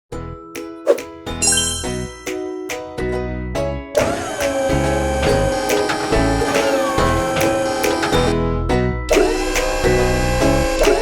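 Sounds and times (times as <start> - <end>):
bell-like jingle notes: 1.2 - 3.3.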